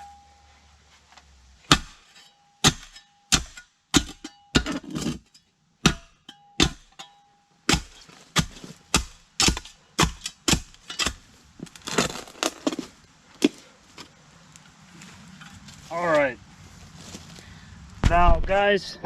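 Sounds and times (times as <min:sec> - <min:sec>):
spade chopping into rocky soil: 0:01.7 - 0:05.2, 0:05.8 - 0:13.6
gravelly scrapes: 0:10.9 - 0:18.6.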